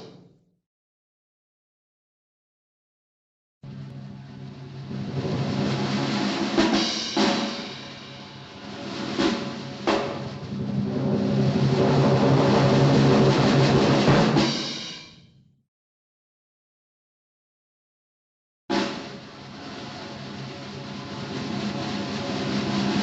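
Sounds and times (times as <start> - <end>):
drum roll: 0.0 - 0.4, 3.6 - 15.4, 18.7 - 23.0
sharp drum hits: 8.9 - 15.2, 18.7 - 19.6.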